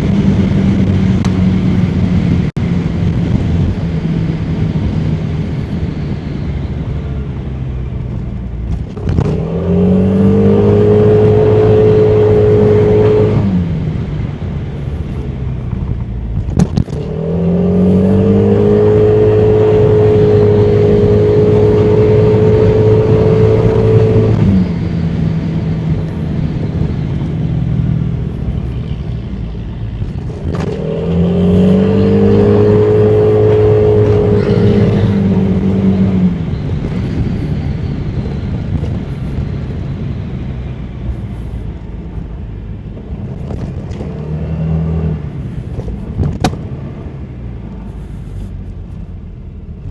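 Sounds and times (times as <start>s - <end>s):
scooter engine pulling away: 17.2s - 39.7s.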